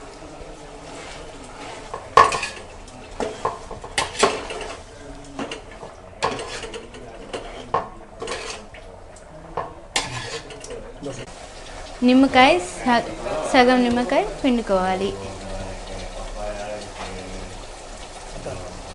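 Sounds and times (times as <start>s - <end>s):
metal spoon scraping a pot: 0.8s - 4.8s, 5.4s - 8.8s, 9.6s - 10.8s.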